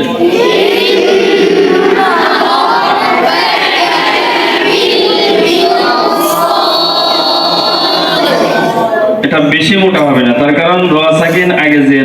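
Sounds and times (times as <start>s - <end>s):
children chanting together: 0.0s - 9.2s.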